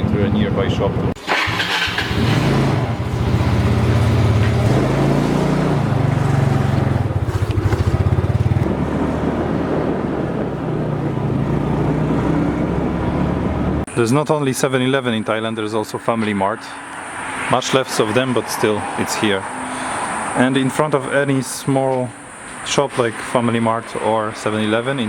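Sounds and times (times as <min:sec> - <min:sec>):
motor scooter engine running: 0:00.0 - 0:13.8.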